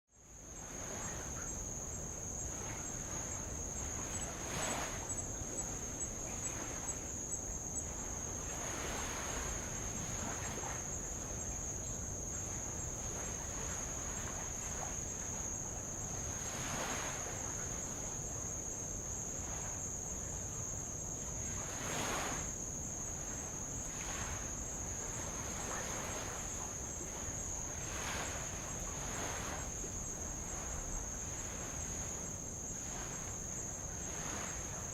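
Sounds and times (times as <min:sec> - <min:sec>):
high-pitched insect trill: 0:00.2 - 0:16.6.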